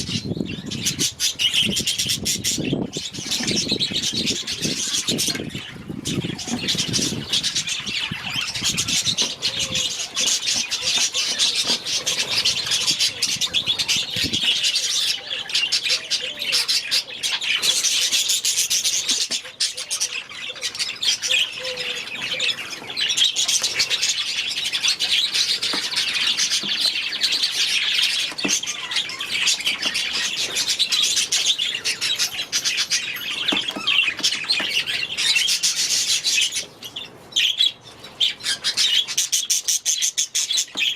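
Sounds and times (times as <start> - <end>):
flock of budgerigars chattering: 0.0 - 40.9.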